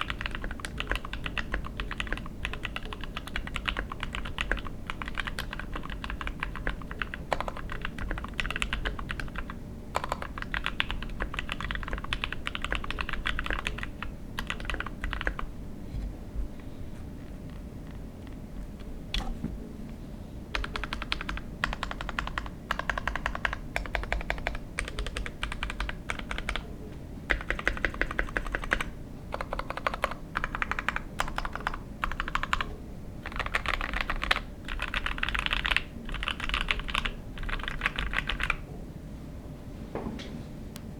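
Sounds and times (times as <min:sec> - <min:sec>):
mechanical keyboard typing: 0:00.0 - 0:15.5, 0:20.6 - 0:26.6, 0:27.3 - 0:38.6.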